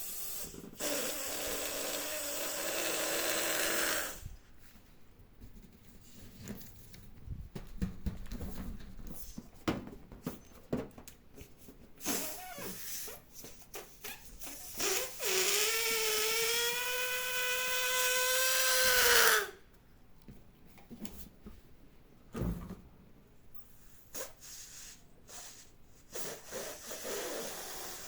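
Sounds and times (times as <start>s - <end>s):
balloon air release squeal: 0.0s - 4.3s, 12.0s - 19.6s, 24.1s - 28.0s
balloon squeaks and rubs: 12.0s - 19.5s, 24.1s - 28.0s.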